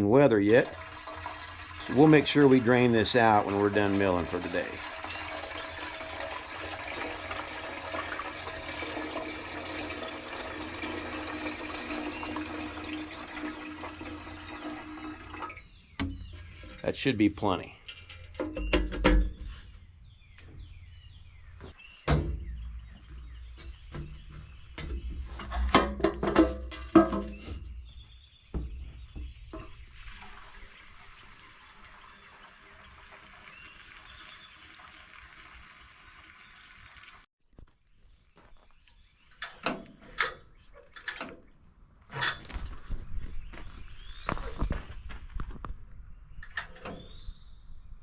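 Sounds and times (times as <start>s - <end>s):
water running: 0.0s - 15.7s, 29.6s - 37.3s
water jug knocking and clattering: 0.2s - 17.0s, 18.0s - 19.4s, 22.1s - 27.6s, 28.5s - 31.2s.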